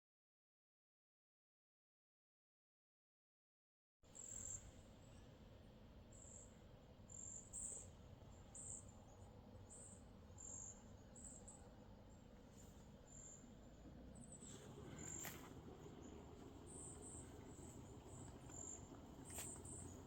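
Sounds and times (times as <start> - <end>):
low outdoor rumble: 4.6 - 20.0.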